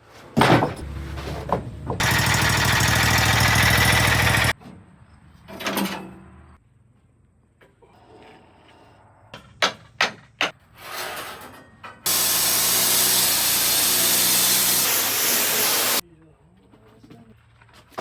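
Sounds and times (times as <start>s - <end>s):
power tool hissing rush on log: 12.1s - 16.0s.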